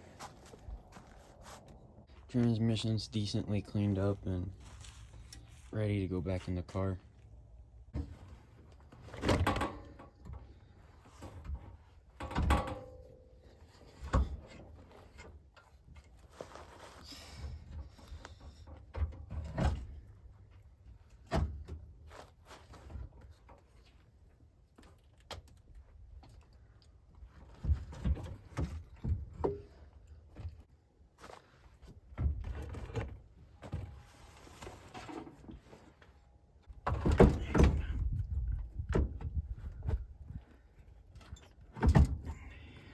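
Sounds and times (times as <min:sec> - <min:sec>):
quiet shuffling: 0:00.0 - 0:09.0
tools and parts thunking: 0:08.0 - 0:16.2, 0:27.5 - 0:30.6, 0:36.6 - 0:40.0.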